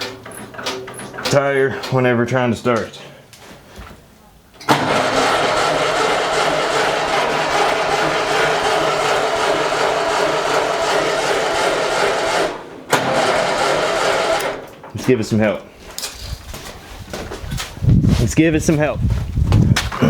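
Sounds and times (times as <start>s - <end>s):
electric starter cranking engine: 4.6s - 14.9s.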